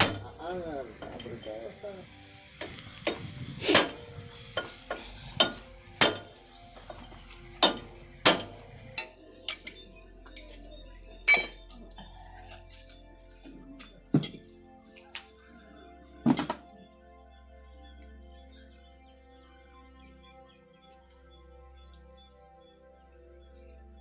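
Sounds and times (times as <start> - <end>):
metal tools clinking: 4.6 - 10.7, 11.3 - 12.9.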